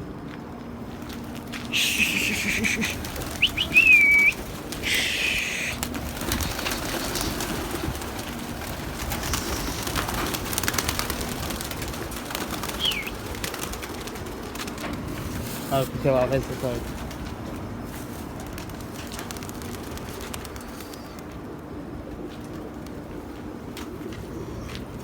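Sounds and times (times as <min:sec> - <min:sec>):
wings flapping: 0:01.0 - 0:15.7, 0:16.4 - 0:21.5
pigeons cooing: 0:01.5 - 0:15.5.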